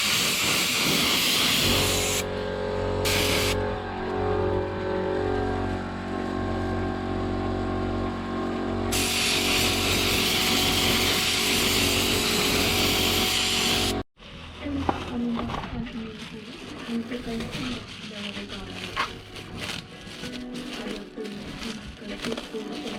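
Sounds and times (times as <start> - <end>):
paint spray gun hissing: 0.0 - 2.2, 3.1 - 3.6, 8.9 - 14.0
steady low hum: 1.9 - 10.4.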